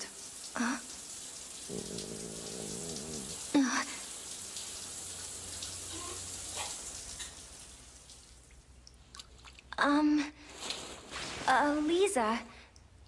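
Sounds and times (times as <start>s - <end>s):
cartoon stomach growl: 1.7s - 3.4s.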